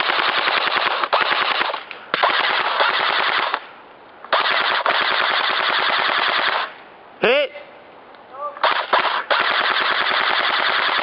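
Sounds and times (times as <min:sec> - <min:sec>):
airsoft rifle full-auto bursts: 0:00.0 - 0:03.6, 0:04.3 - 0:06.8, 0:08.6 - 0:11.0.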